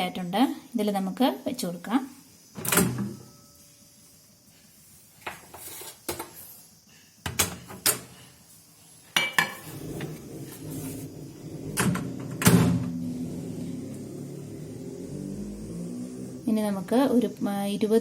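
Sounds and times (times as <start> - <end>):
oven humming: 9.2 - 18.0.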